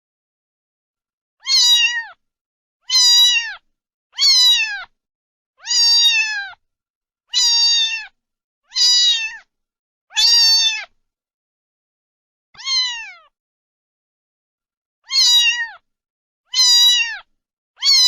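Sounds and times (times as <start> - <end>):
cat meowing: 1.4 - 2.2, 2.8 - 4.9, 5.6 - 6.6, 7.3 - 9.5, 10.1 - 11.0, 12.6 - 13.4, 15.0 - 15.8, 16.5 - 18.0.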